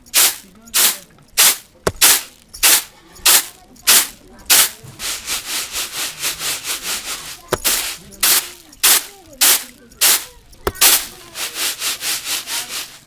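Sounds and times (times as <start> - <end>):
broom sweeping concrete: 0.0 - 13.0.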